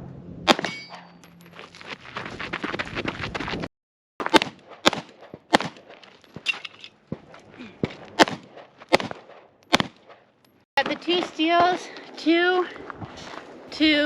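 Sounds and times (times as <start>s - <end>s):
pistol shots: 0.5s - 1.1s, 4.2s - 5.9s, 8.2s - 10.2s.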